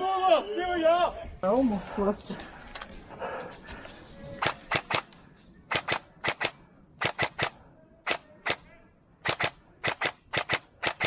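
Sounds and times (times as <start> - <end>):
airsoft gun shots: 5.7 - 8.6, 9.2 - 11.0.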